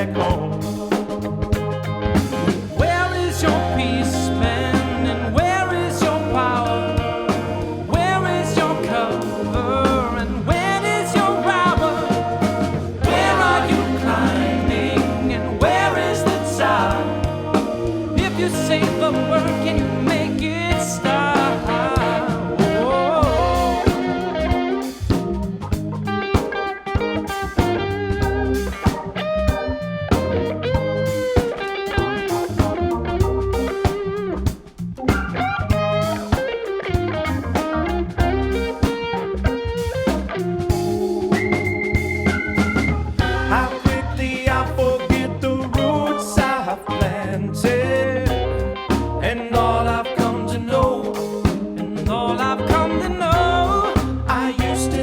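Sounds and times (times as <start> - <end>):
organ bass line: 0.0 - 55.0
pitch-bending lead melody: 0.0 - 55.0
steady beat: 6.1 - 26.6, 38.2 - 46.6.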